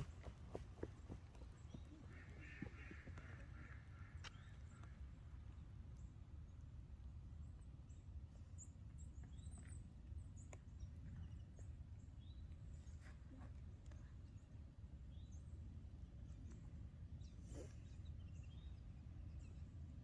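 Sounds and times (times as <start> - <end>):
faint bird chirps: 7.9 - 20.0.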